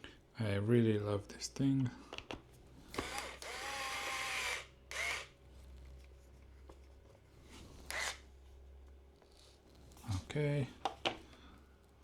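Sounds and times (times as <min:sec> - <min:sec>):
electric screwdriver motor whirring: 0:03.0 - 0:05.3, 0:07.9 - 0:08.2.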